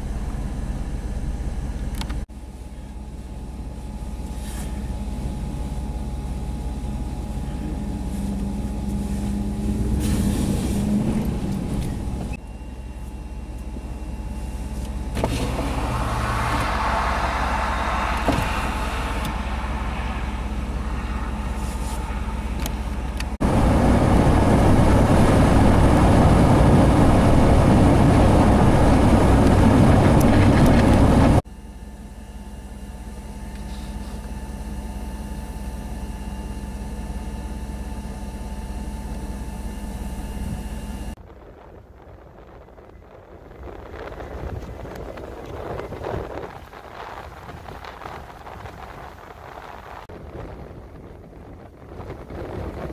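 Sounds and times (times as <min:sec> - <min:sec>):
vehicle engine and road noise: 0:00.0 - 0:52.9
wind buffeting microphone: 0:15.3 - 0:31.4, 0:40.4 - 0:52.9.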